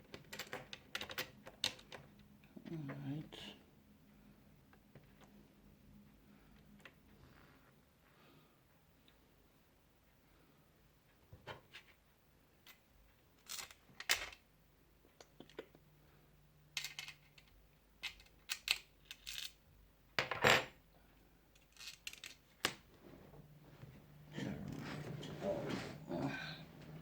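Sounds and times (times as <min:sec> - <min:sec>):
clinks of small hardware parts: 0:16.8 - 0:19.6, 0:21.6 - 0:22.8.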